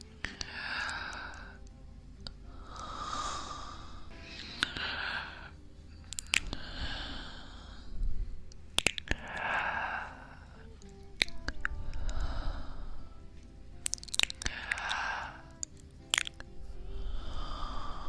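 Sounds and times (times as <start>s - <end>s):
man breathing slowly: 0.0s - 1.6s, 2.2s - 8.5s, 9.1s - 13.3s, 14.4s - 15.7s, 16.6s - 18.0s
soft clicks: 6.0s - 6.7s, 8.5s - 9.5s, 10.7s - 12.2s.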